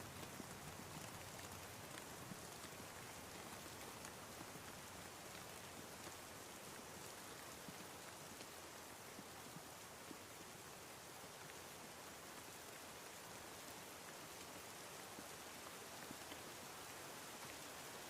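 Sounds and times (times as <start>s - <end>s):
soft raindrop ticks: 0.0s - 18.0s
steady rain falling: 0.0s - 18.0s.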